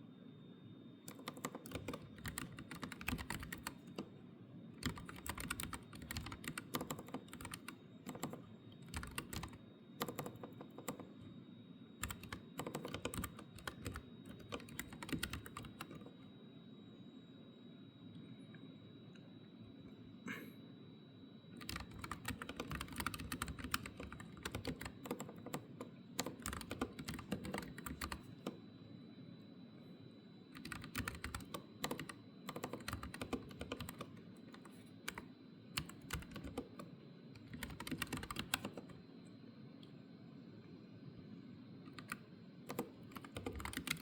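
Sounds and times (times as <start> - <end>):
mechanical keyboard typing: 1.1 - 4.1, 4.8 - 11.1, 12.0 - 16.1, 21.6 - 28.6, 30.6 - 35.2, 35.8 - 38.9, 41.9 - 44.0.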